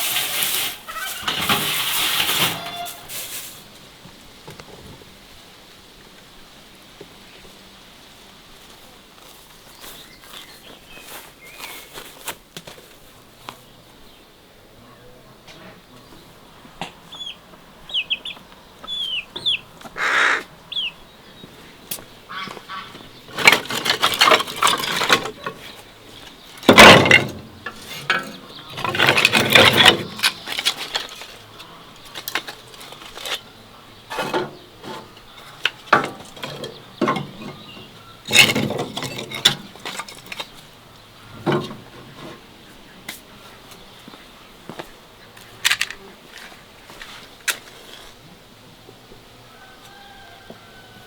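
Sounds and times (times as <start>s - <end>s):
fowl calling: 0.8s - 1.4s, 2.4s - 3.1s, 17.0s - 21.0s, 22.3s - 23.2s
high bird chirps: 17.1s - 21.1s.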